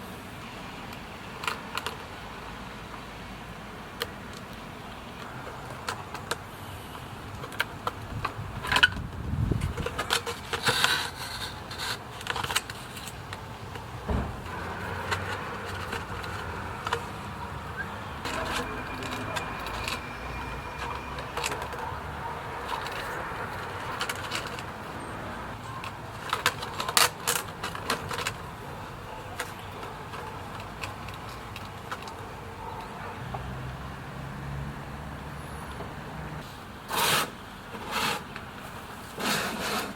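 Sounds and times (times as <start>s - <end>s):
objects being handled: 7.3s - 33.0s.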